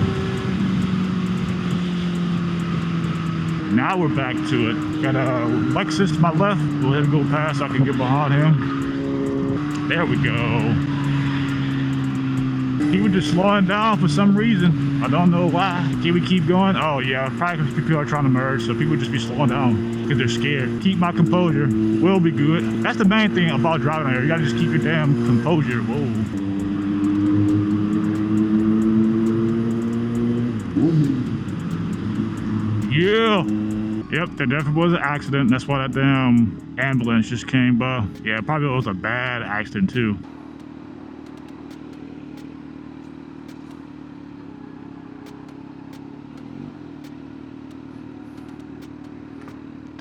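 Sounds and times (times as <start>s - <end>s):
motorcycle engine cruising: 0.0s - 50.0s
wind and road noise: 0.0s - 50.0s
faint sharp ticks: 26.2s - 33.9s, 43.5s - 43.8s, 48.4s - 50.0s.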